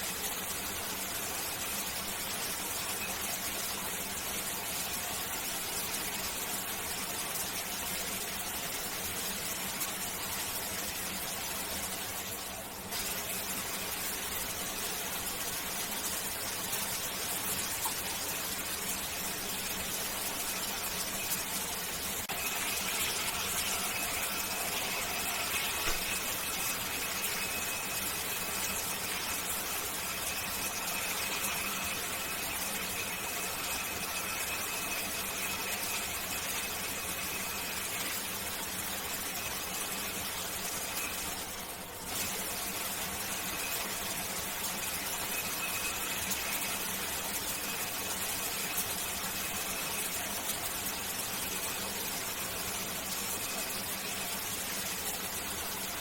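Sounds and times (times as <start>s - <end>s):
shower spray running: 8.9s - 56.0s
high squealing whistle: 22.3s - 37.9s.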